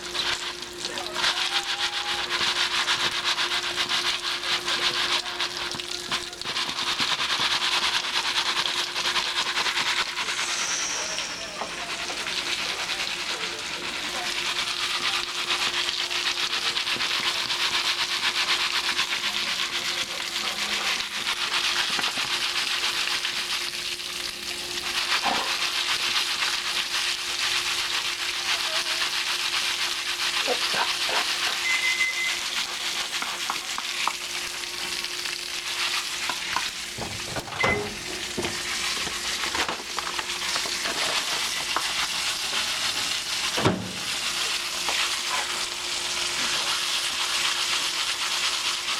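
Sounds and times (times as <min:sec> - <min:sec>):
popcorn kernels popping: 0:00.0 - 0:10.1, 0:25.0 - 0:48.9
popcorn sizzling in oil: 0:00.0 - 0:48.9.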